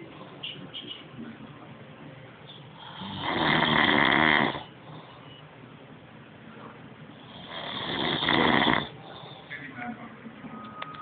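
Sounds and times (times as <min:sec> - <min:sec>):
quiet breathing: 0:02.6 - 0:03.2, 0:04.6 - 0:05.5, 0:08.3 - 0:09.9
man snoring loudly: 0:02.8 - 0:04.6, 0:07.3 - 0:08.9.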